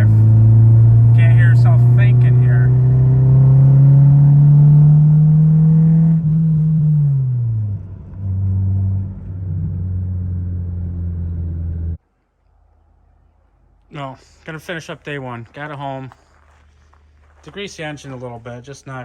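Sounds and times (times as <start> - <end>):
car engine and loud exhaust: 0.0 - 12.0.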